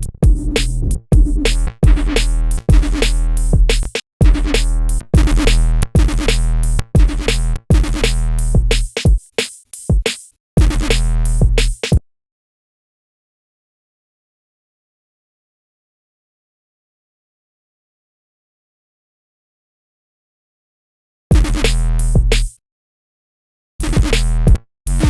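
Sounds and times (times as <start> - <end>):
electronic music with bass stabs: 0.0 - 9.1, 10.6 - 12.0, 21.3 - 22.5, 23.8 - 25.0
drum-machine beat: 0.0 - 12.0, 21.3 - 22.6, 23.8 - 25.0.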